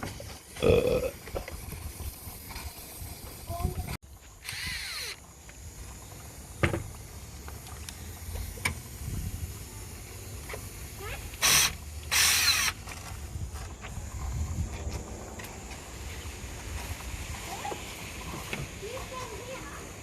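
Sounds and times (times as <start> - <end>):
hissing bursts: 1.3 - 5.2, 7.0 - 12.9.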